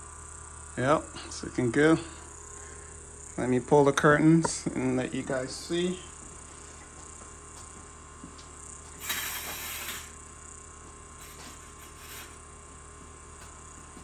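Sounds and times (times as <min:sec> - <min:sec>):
curtain swishing along rod: 0:09.0 - 0:10.2, 0:11.2 - 0:12.4.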